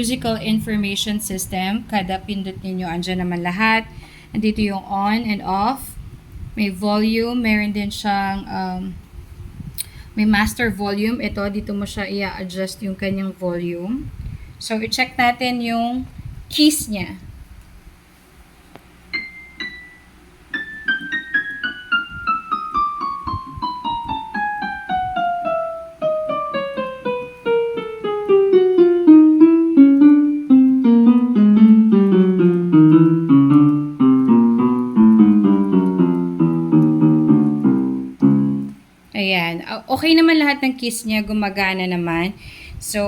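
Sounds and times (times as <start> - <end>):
electronic keyboard notes descending: 19.2 - 38.8.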